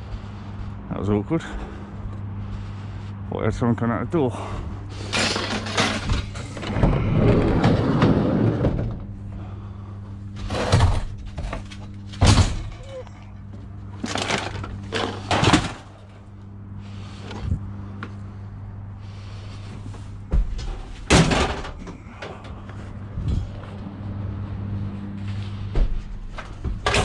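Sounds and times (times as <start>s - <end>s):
steady low hum: 0.0s - 27.0s
items clattering and banging: 5.0s - 9.1s, 14.0s - 16.1s, 20.3s - 22.6s, 26.2s - 27.0s.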